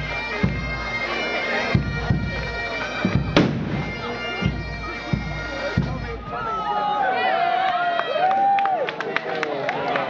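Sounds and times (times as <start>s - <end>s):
bagpipes playing: 0.0s - 6.9s
crowd voices: 0.0s - 10.0s
sharp bangs: 3.1s - 4.1s.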